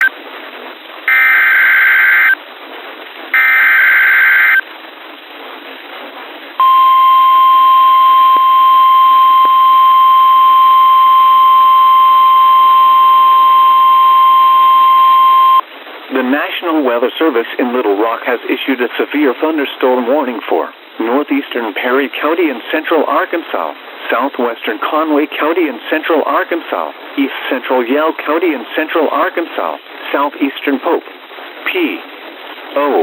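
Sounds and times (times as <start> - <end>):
radio warning alarm tone: 1.1 - 2.4, 3.4 - 4.6, 6.6 - 15.6.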